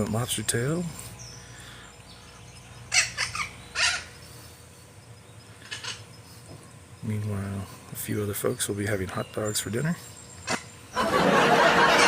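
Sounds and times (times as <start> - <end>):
bird harsh caw-like calls: 1.2 - 4.7, 5.3 - 6.6, 10.4 - 11.0.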